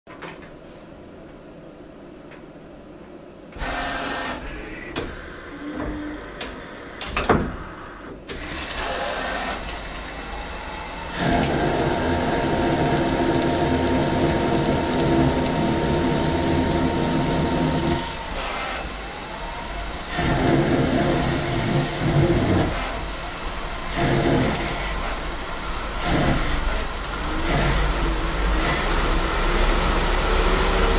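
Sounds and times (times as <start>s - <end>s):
machine clunks: 3.6s - 8.8s
lathe spindle whine: 3.6s - 30.9s.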